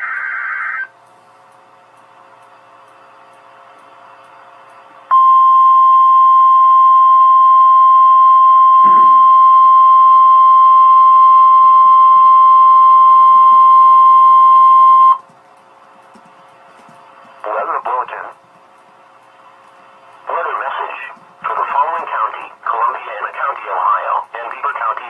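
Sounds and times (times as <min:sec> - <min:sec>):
steady alarm tone: 0:05.1 - 0:15.2.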